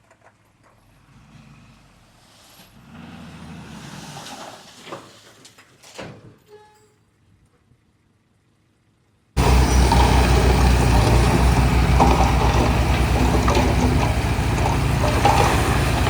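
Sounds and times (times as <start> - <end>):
faint machine engine noise: 6.8 - 16.0.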